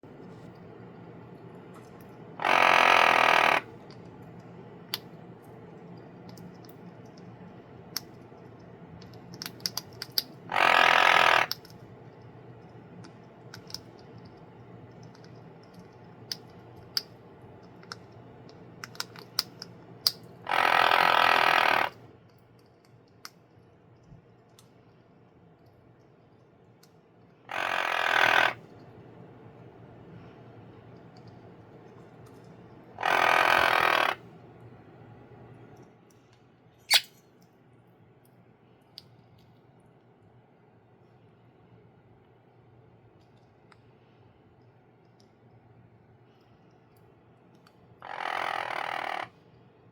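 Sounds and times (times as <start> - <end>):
parrot imitating snoring: 2.4 - 3.6, 10.5 - 11.5, 20.5 - 21.9, 27.5 - 28.6, 33.0 - 34.2, 48.1 - 49.3.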